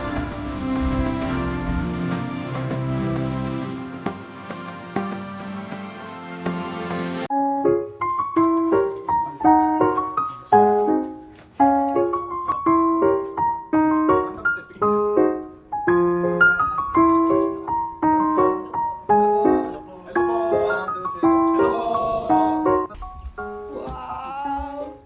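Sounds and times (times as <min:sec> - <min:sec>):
solo piano music: 0:00.0 - 0:05.1, 0:06.4 - 0:25.0
different music track: 0:00.0 - 0:08.6.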